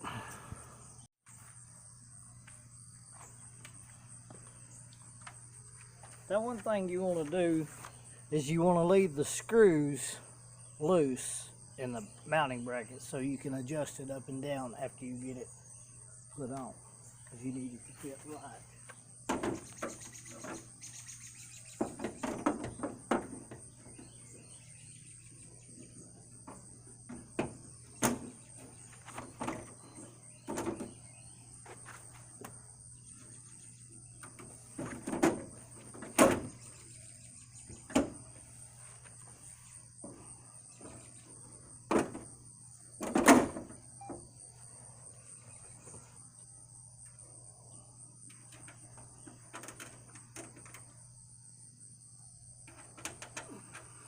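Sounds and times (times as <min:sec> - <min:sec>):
crickets chirping: 0:00.0 - 0:54.0
clunks and knocks of tools: 0:19.3 - 0:20.7, 0:21.7 - 0:24.2, 0:25.8 - 0:31.0, 0:43.0 - 0:44.2, 0:52.6 - 0:54.0.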